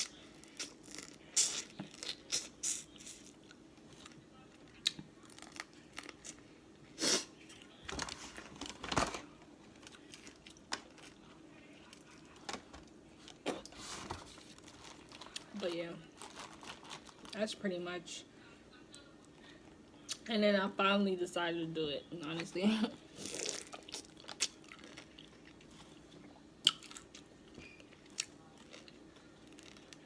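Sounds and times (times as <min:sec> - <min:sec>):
chewing: 0:23.2 - 0:30.0.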